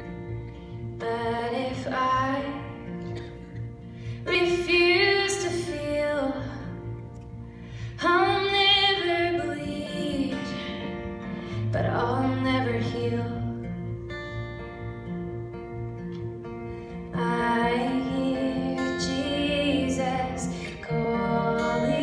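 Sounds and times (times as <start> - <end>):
woman singing slow song: 0.6 - 14.0, 16.9 - 22.0.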